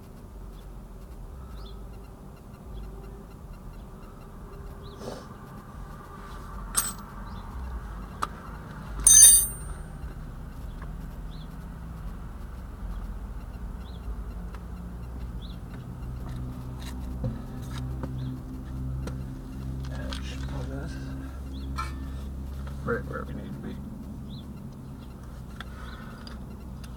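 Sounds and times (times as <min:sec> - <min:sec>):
low steady hum: 0:06.8 - 0:07.0
metallic clang: 0:06.8 - 0:07.0, 0:09.0 - 0:09.8.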